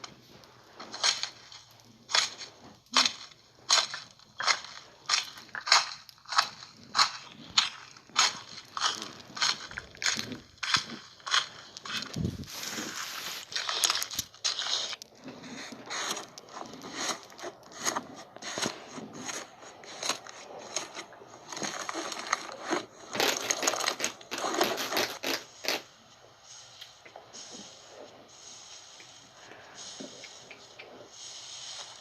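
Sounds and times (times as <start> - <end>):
slime squishing crackles and pops: 0.9 - 25.9.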